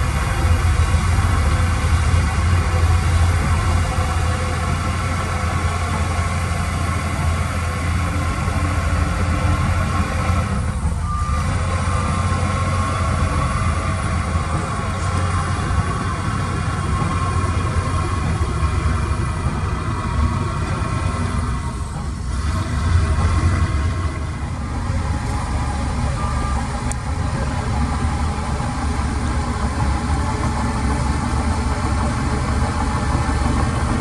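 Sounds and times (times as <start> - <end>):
diesel engine rumbling: 0.0 - 34.0
reversing alarm beeps: 10.9 - 17.9, 25.5 - 27.5.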